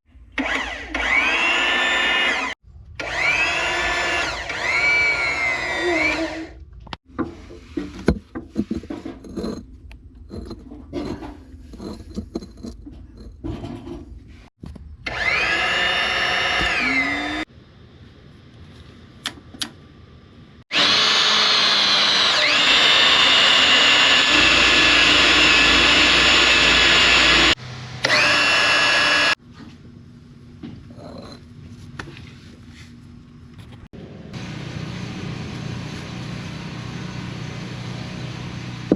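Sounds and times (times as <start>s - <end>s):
power tool whining: 0.4s - 6.6s, 15.0s - 17.5s, 20.7s - 29.4s
knocks and clatter of work: 6.8s - 14.9s, 29.5s - 32.2s.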